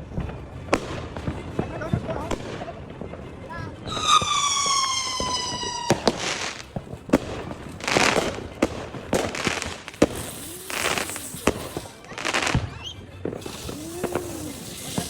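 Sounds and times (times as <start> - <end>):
firework bangs and crackling: 0.0 - 15.0
firework whistle: 3.9 - 6.7, 9.2 - 15.0.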